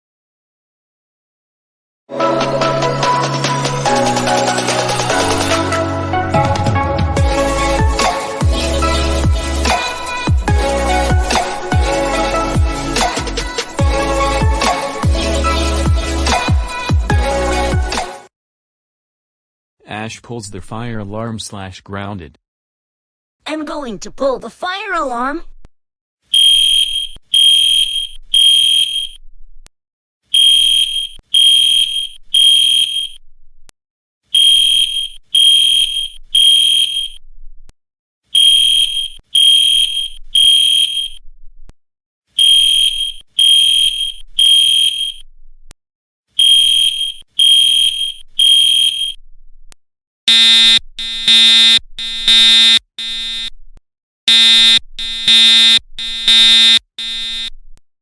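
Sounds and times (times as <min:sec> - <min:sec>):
fire alarm high pulsing tone: 0:30.4 - 0:33.1, 0:38.4 - 0:41.1, 0:42.4 - 0:45.2, 0:46.4 - 0:49.2, 0:50.3 - 0:53.5, 0:54.3 - 0:57.5
buzzy alarm horn blasts: 0:50.3 - 0:53.4, 0:54.3 - 0:57.4.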